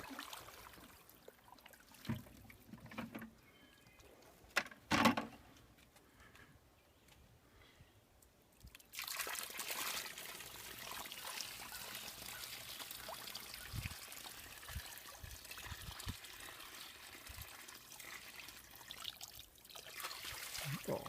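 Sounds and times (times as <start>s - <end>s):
water pouring onto dirt: 0.0s - 2.2s, 8.6s - 21.0s.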